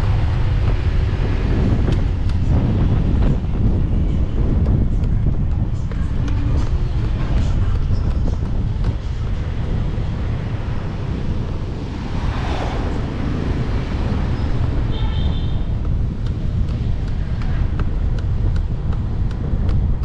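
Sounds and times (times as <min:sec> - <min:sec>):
motorcycle engine and road noise: 0:00.0 - 0:20.0
wind buffeting microphone: 0:00.0 - 0:20.0
vehicle passing: 0:09.0 - 0:18.9.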